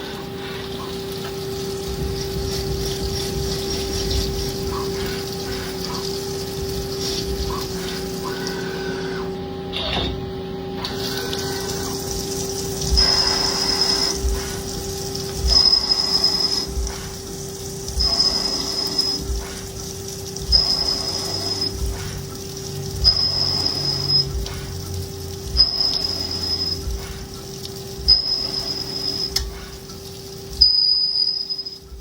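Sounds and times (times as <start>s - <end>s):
metal lathe humming: 0.0s - 31.8s
high-pitched cutting squeal: 10.8s - 17.2s, 23.0s - 24.8s.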